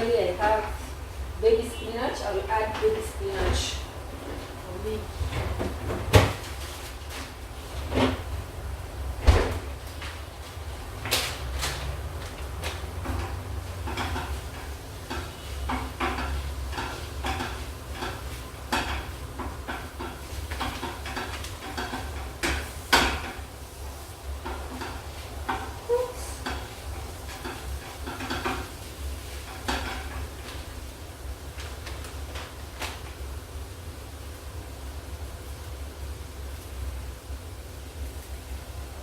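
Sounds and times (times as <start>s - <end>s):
food sizzling: 9.7s - 39.0s
utensil scraping a frying pan: 12.8s - 30.7s.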